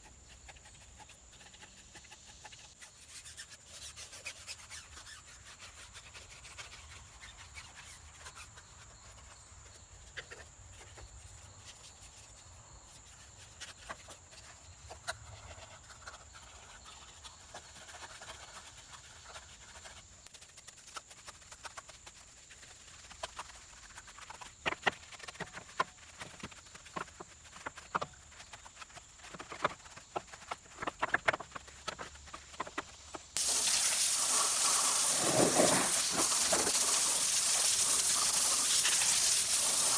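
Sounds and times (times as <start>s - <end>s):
brush scrubbing a tire: 0.2s - 8.6s, 15.5s - 31.0s, 32.0s - 39.9s
pressure-washer spray hiss: 33.4s - 39.9s.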